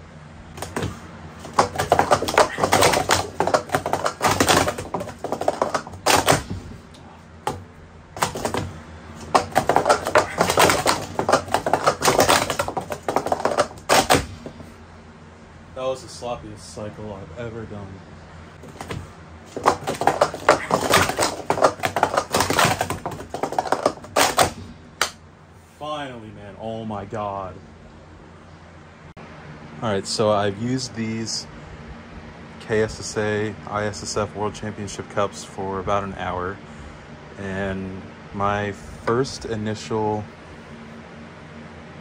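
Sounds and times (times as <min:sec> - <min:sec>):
wooden cups clattering: 0:00.6 - 0:06.7, 0:08.2 - 0:14.6, 0:18.6 - 0:25.2
single knocks: 0:00.6 - 0:06.8, 0:07.4 - 0:14.6, 0:18.6 - 0:25.2.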